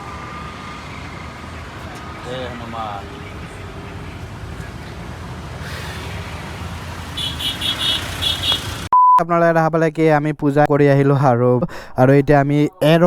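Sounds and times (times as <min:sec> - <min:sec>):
street traffic rumble: 0:00.0 - 0:08.9.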